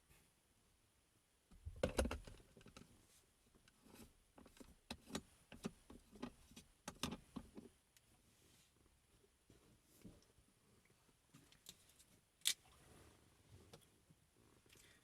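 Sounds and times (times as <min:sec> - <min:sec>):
plastic container clicks and knocks: 0:01.7 - 0:02.4.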